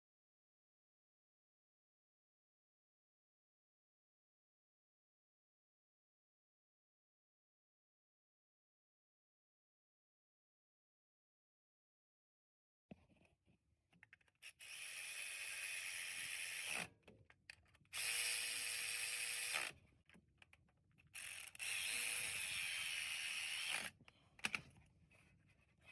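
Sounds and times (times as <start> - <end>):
ratcheting power tool running: 14.4 - 16.9, 18.0 - 19.7, 21.2 - 24.0.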